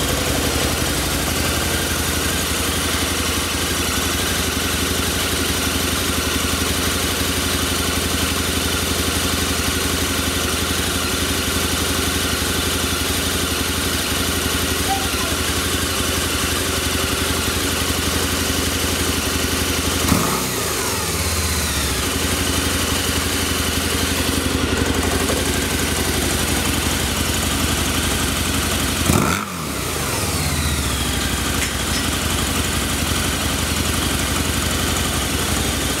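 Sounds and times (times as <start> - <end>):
motorcycle engine idling: 0.0 - 36.0
motorcycle throttle revs: 14.8 - 33.9.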